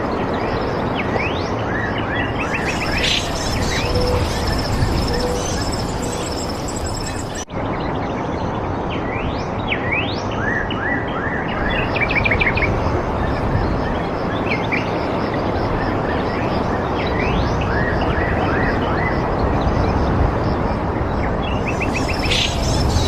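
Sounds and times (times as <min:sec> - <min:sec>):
rushing background noise: 0:00.0 - 0:23.0
birds calling: 0:02.4 - 0:07.4, 0:21.6 - 0:23.0.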